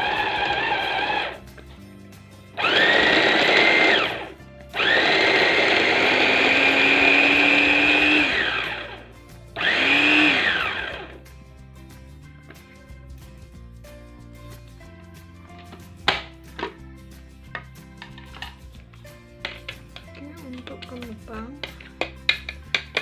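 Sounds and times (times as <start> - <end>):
electric chopper motor whining: 0.0 - 1.4, 2.6 - 11.2.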